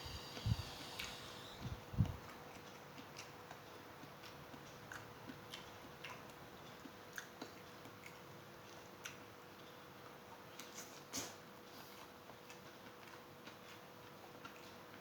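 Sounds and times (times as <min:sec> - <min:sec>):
person chewing food: 0:02.5 - 0:09.7, 0:12.0 - 0:15.0.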